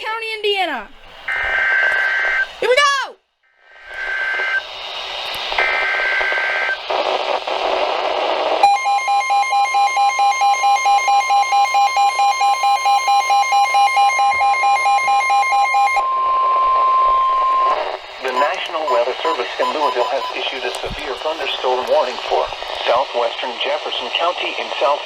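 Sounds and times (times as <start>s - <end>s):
buzzy data header bursts: 5.6s - 23.0s
long steady alert tone: 8.6s - 20.6s
rapid beeping: 8.6s - 23.0s.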